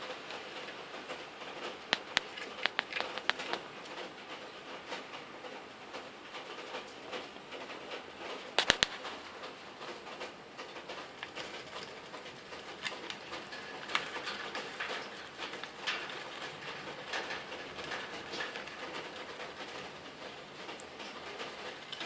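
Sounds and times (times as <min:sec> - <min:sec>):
bird shredding paper: 0:10.2 - 0:22.0.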